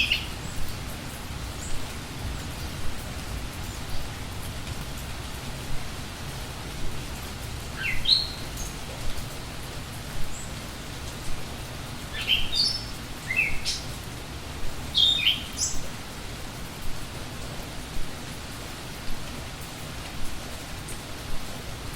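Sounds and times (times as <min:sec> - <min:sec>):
songbird chirping: 0:00.0 - 0:00.8, 0:07.6 - 0:09.0, 0:12.1 - 0:14.0, 0:14.8 - 0:15.9
steady rain falling: 0:00.0 - 0:21.9.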